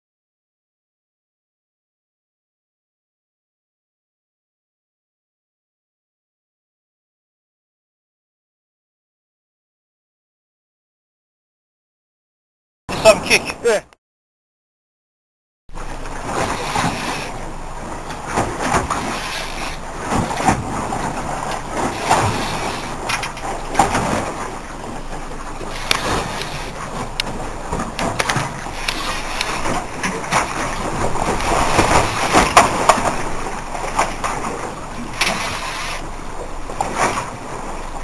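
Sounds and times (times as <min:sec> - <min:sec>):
wind and water rushing: 0:12.9 - 0:13.9, 0:15.7 - 0:38.0
boat hull knocks and bumps: 0:15.8 - 0:35.6.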